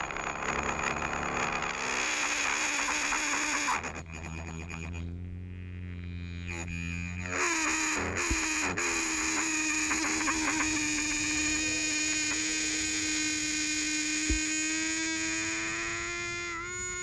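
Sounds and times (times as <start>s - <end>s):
metal coin singing on dry ice: 0.0s - 4.6s, 6.6s - 14.1s.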